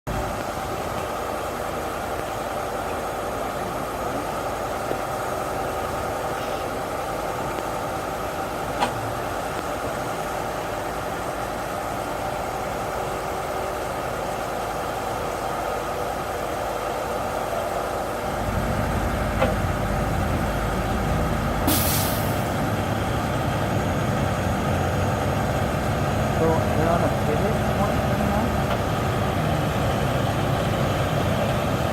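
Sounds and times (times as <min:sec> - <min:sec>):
truck engine running: 0:00.1 - 0:31.9
air release hiss: 0:21.6 - 0:22.6.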